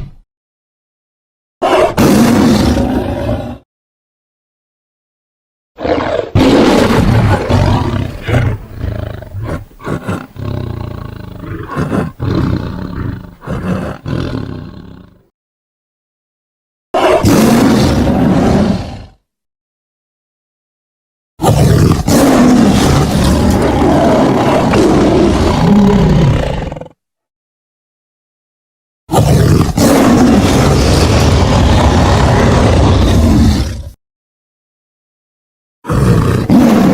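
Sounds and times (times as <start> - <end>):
tiger roaring: 1.6 - 3.6, 5.8 - 15.2, 17.0 - 19.2, 21.4 - 27.0, 29.1 - 34.0, 35.9 - 36.9.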